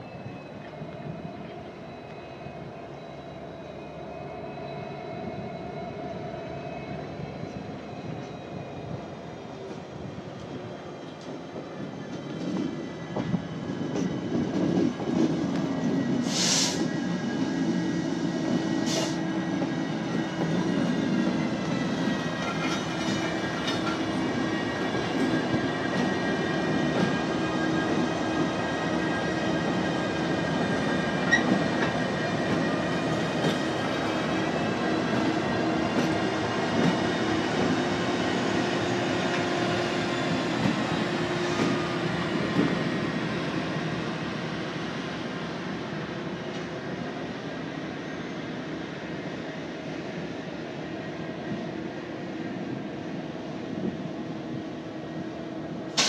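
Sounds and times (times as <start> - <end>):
freight train moving: 0.0 - 56.0
air hiss bursts: 16.2 - 17.0, 18.8 - 19.3.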